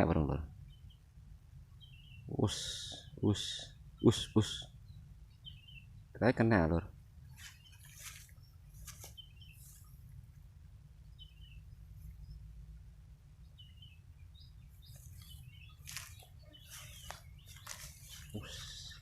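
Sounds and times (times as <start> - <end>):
steady low rumble: 8.5 - 16.2
faint bird chirps: 11.0 - 12.6, 13.4 - 19.0.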